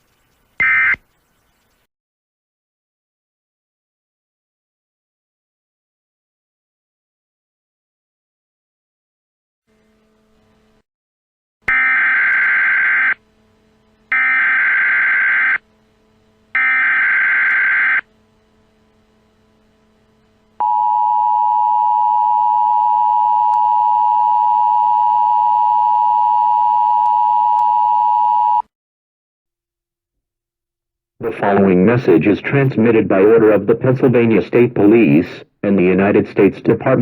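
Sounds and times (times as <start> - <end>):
digital data tone bursts: 0.0 - 1.9
two-tone attention signal: 0.6 - 1.0, 20.6 - 28.6.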